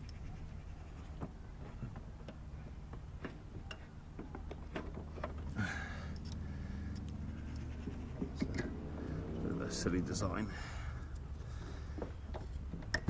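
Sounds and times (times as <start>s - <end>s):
light metallic clicks and taps: 6.1s - 8.8s.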